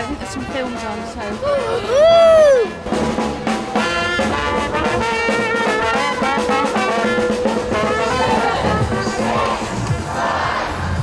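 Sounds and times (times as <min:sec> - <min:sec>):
held brass note: 0:00.0 - 0:01.9, 0:02.6 - 0:10.0
brass music playing: 0:00.0 - 0:11.0
short sliding brass note: 0:02.9 - 0:09.8.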